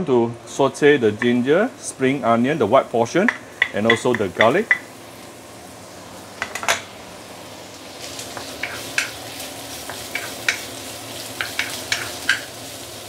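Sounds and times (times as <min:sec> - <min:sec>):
vegetables sizzling in oil: 0:00.4 - 0:13.0
spatula scraping a wok: 0:08.3 - 0:09.2.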